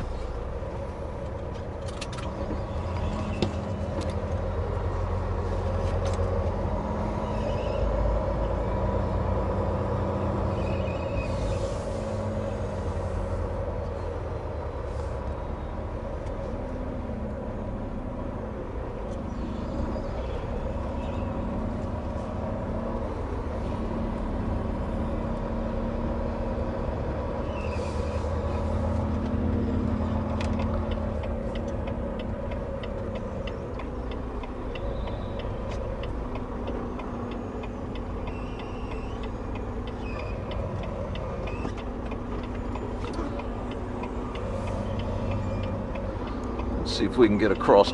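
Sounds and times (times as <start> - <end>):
diesel truck engine running: 0.0 - 47.9.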